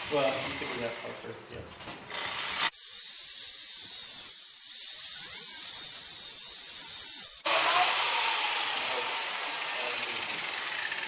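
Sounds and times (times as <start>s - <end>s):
angle grinder hissing on steel: 2.6s - 11.0s.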